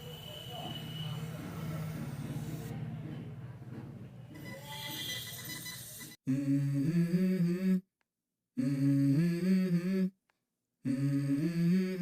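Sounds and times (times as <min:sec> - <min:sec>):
hummed vocal phrase: 0:06.3 - 0:07.8, 0:08.6 - 0:10.2, 0:10.8 - 0:12.0.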